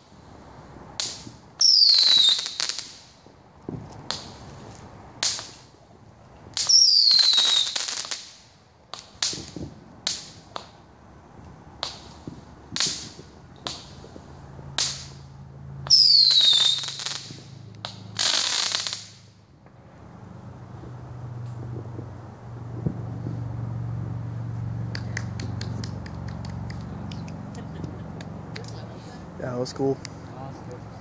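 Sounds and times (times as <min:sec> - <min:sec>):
firework crackling: 0:00.0 - 0:31.0
firework shells bursting: 0:00.9 - 0:05.8, 0:06.5 - 0:10.8, 0:11.8 - 0:19.8
falling firework whistle: 0:01.0 - 0:03.0, 0:06.6 - 0:08.2, 0:15.8 - 0:19.2.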